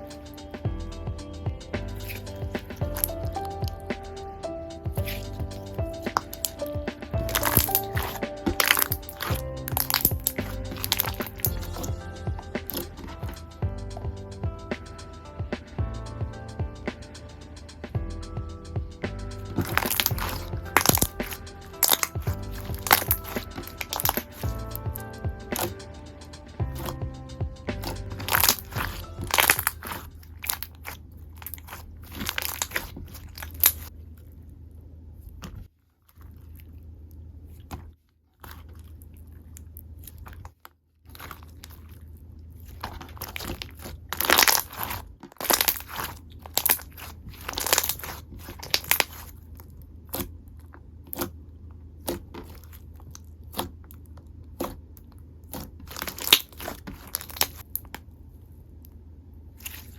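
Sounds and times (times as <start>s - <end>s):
slime crackling and popping: 2.0s - 3.2s, 5.0s - 5.3s, 6.0s - 6.6s, 7.2s - 11.9s, 12.6s - 13.4s, 19.6s - 24.6s, 27.8s - 33.9s, 42.6s - 51.3s, 52.0s - 58.0s, 59.6s - 59.9s.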